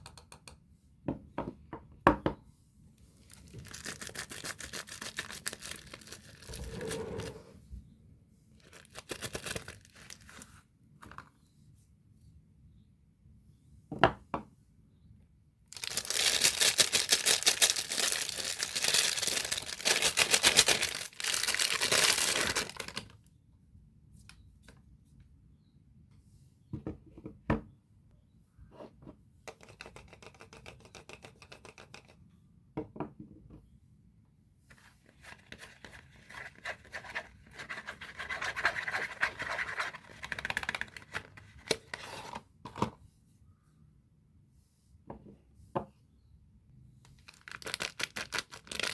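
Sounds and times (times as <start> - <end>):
packaging tearing and crinkling: 8.6 - 10.4, 15.8 - 23.2, 47.3 - 48.9.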